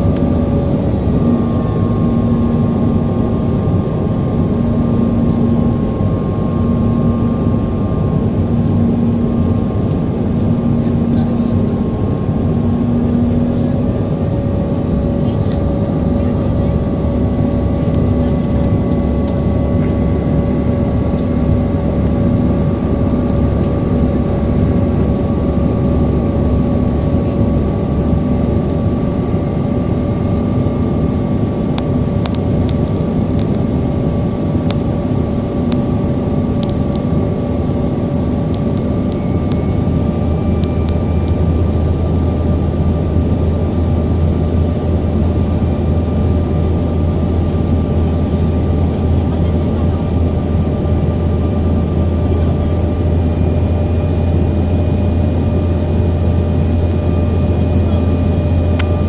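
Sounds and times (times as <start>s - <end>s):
aircraft engines droning: 0.0s - 59.0s
deep hum: 0.0s - 59.0s.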